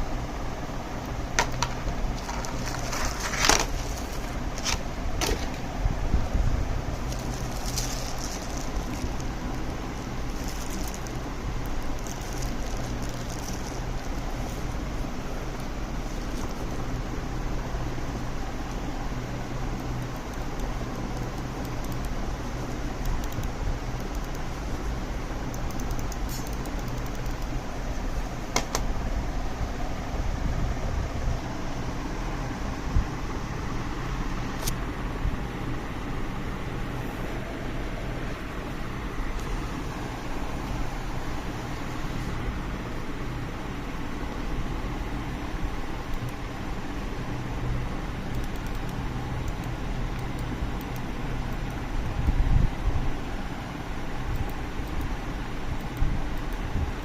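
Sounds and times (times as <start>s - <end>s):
steady low hum: 0.0s - 57.0s
soft rustle: 2.1s - 4.8s, 7.0s - 15.1s
sharp clicks: 19.8s - 24.5s, 25.5s - 27.6s, 48.3s - 51.8s.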